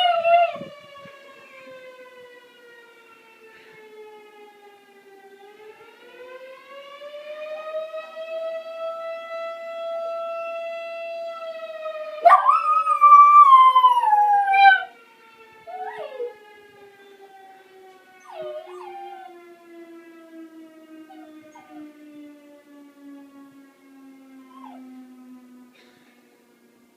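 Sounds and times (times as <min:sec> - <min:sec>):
siren wailing: 0:00.0 - 0:26.9
dog howling: 0:12.2 - 0:14.9, 0:15.7 - 0:16.4, 0:18.2 - 0:19.4.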